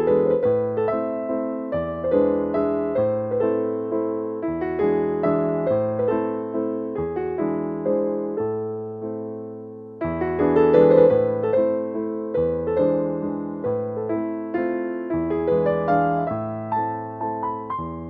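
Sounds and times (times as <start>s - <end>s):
gentle piano music: 0.0s - 18.0s.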